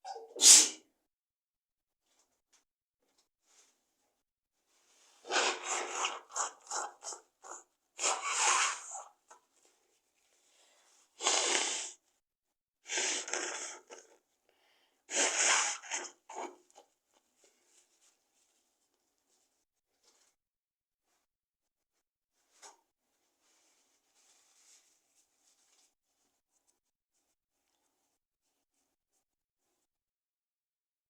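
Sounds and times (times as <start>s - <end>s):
woman sneezing: 0.1s - 0.8s.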